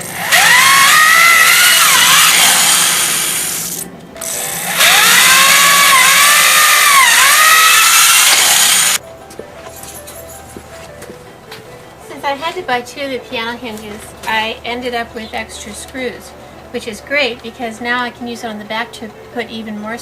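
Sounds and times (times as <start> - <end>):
electric drill drilling metal: 0.0 - 9.0.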